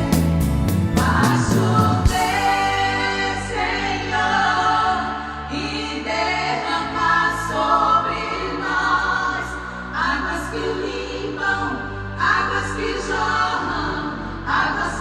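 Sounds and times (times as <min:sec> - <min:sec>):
instrumental backing: 0:00.0 - 0:03.4
gospel choir singing: 0:00.0 - 0:15.0.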